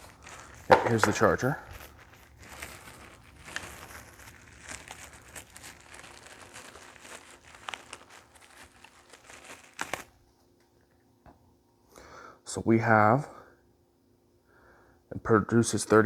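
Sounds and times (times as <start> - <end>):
packaging crinkling and rustling: 0.0 - 11.0.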